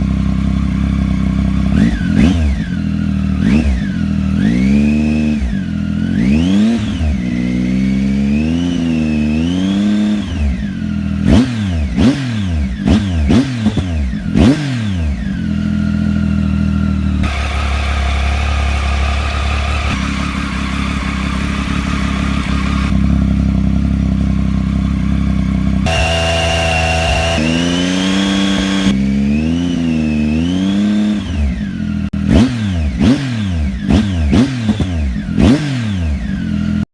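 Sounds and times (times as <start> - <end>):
motorcycle engine revving: 0.0 - 36.9.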